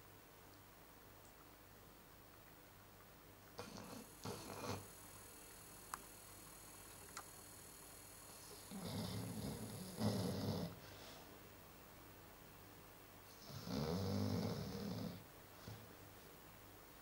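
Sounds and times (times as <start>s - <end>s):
dog snoring: 3.6s - 5.4s, 8.1s - 10.9s, 13.3s - 15.8s.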